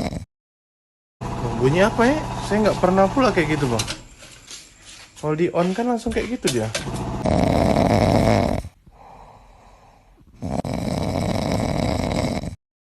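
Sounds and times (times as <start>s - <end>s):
rough rasping buzz: 1.2s - 5.0s, 6.1s - 8.8s.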